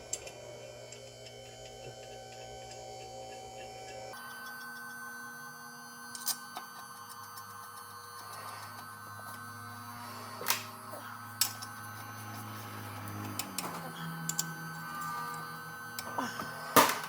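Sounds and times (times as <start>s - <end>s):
steady low hum: 5.3s - 17.0s.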